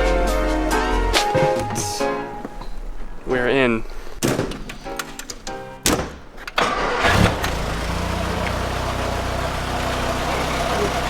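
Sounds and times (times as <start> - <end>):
sharp knocks: 4.2 - 6.6
car engine starting and idling: 6.4 - 11.0.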